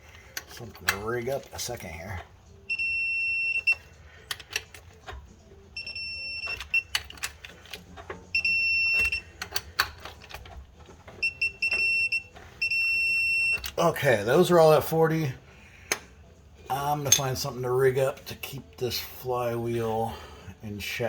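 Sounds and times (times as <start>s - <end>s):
wrench clicks: 3.7s - 5.3s, 6.4s - 8.3s, 8.9s - 10.6s
torque adapter beeping: 4.6s - 9.8s, 11.2s - 13.8s.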